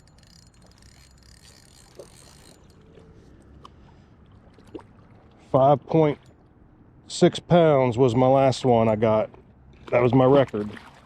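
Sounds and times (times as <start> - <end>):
fishing reel being cranked: 0.0 - 3.2.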